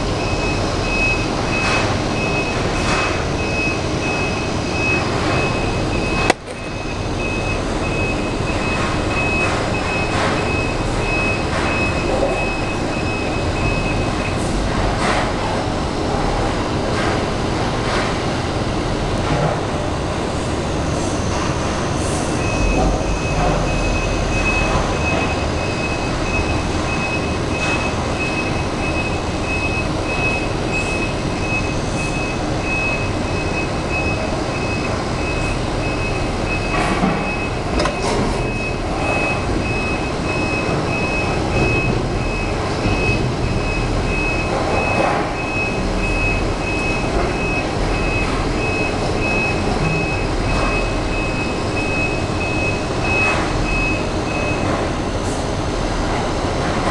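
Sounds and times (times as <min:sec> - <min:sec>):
low engine rumble: 0:00.0 - 0:56.9
truck reversing alarm beeping: 0:00.1 - 0:14.6, 0:21.3 - 0:55.2.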